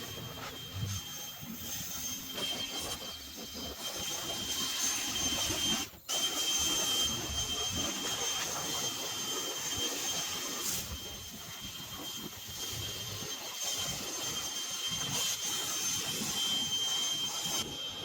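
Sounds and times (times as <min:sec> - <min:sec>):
leaf blower running: 0:02.4 - 0:11.0.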